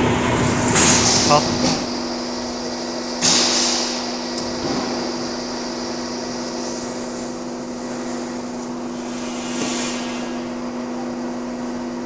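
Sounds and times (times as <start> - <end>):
concrete mixer motor humming: 0.0 - 3.2.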